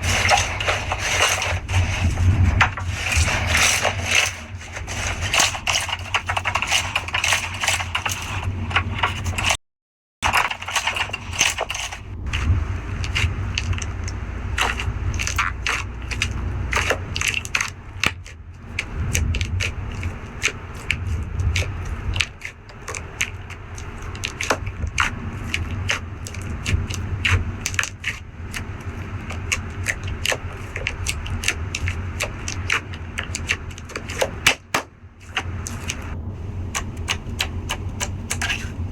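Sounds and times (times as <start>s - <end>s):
slime crackling and popping: 10.6s - 38.8s.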